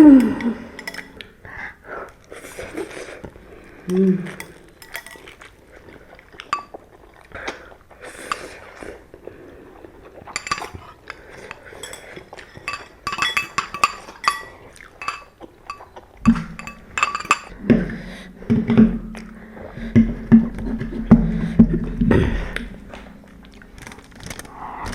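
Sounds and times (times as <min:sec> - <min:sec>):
utensils clinking against bowls: 0:00.0 - 0:01.3, 0:04.3 - 0:05.5, 0:06.4 - 0:06.8, 0:08.2 - 0:08.6, 0:10.2 - 0:17.6.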